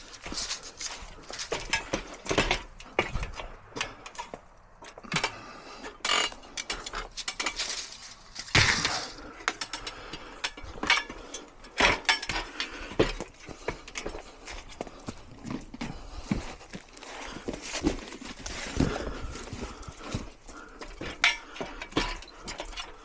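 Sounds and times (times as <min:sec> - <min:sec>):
metal scrape: 0:06.1 - 0:09.3.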